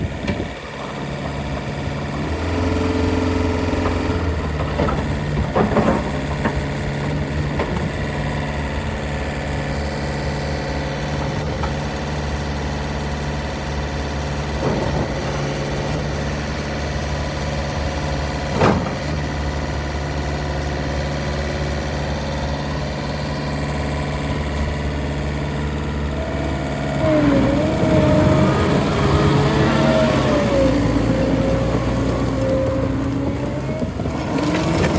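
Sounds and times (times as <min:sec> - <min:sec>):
diesel engine idling: 0:00.0 - 0:34.8.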